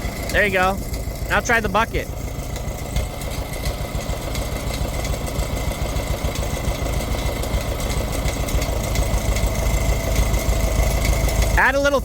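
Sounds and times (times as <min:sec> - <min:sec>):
backhoe engine idling: 0:00.0 - 0:12.0.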